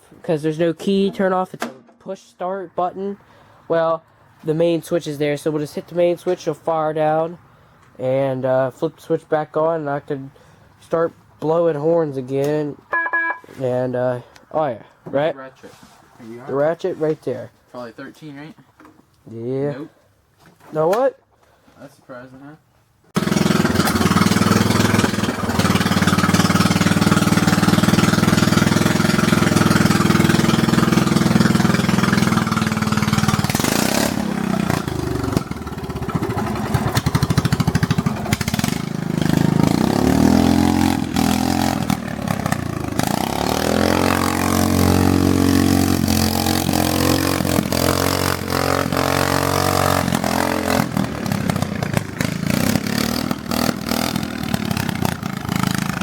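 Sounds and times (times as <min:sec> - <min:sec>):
riding lawn mower engine revving: 0:23.2 - 0:56.0.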